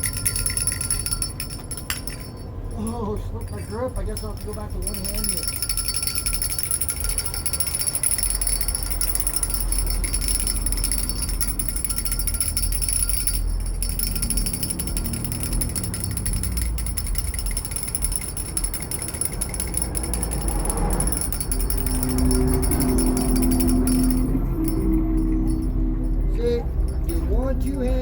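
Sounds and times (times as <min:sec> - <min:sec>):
handbell ringing rapidly: 0:00.0 - 0:28.0.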